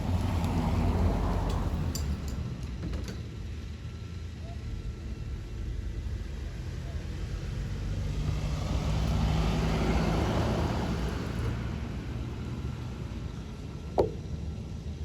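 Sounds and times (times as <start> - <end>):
motor vehicle passing by: 5.9 - 13.1.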